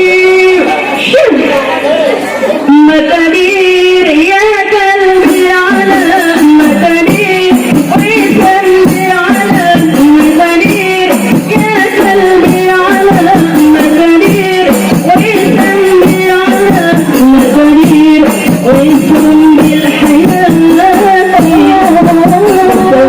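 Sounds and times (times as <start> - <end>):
high voice singing: 2.7 - 23.0
frame drums beating: 5.1 - 23.0.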